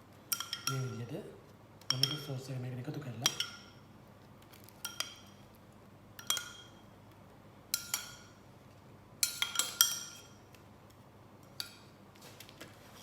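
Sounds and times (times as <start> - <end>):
spoon clinking against bowl: 0.3 - 1.0, 1.9 - 2.4, 3.2 - 3.8, 4.8 - 5.4, 6.2 - 6.8, 7.7 - 8.4, 9.2 - 10.4.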